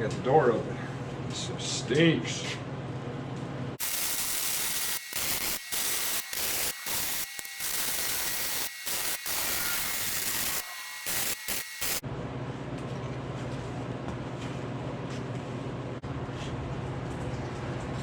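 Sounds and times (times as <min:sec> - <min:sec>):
cutting torch hissing: 0:03.8 - 0:12.0.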